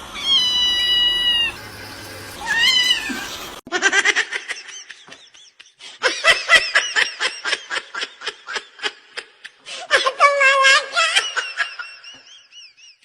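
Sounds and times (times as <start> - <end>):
cat meowing: 0.1 - 3.6.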